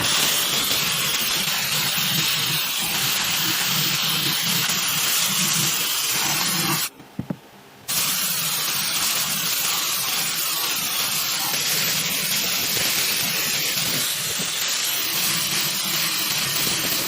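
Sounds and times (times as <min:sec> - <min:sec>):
woodworking power tool hissing: 0:00.0 - 0:06.9, 0:07.9 - 0:17.0.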